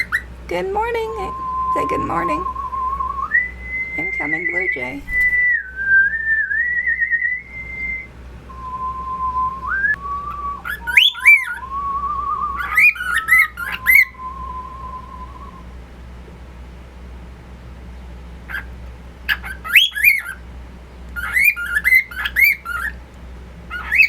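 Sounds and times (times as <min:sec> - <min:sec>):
long wavering whistled notes: 0:00.0 - 0:15.8.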